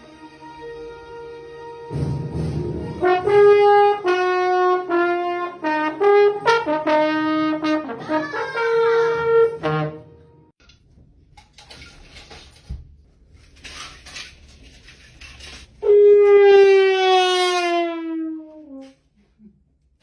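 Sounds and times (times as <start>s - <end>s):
brass music playing: 0.0s - 10.5s, 15.8s - 18.8s.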